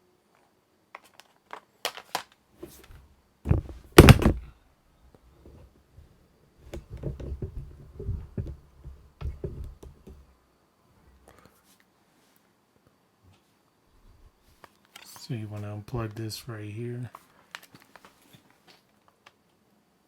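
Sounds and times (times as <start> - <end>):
loud thunk: 3.5 - 4.5.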